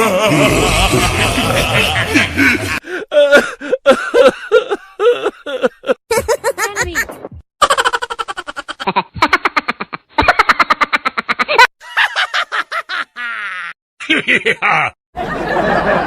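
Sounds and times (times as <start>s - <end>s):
comic giggling voice: 0.0s - 3.4s, 4.0s - 15.0s
rapid laugh pulses: 0.2s - 2.8s.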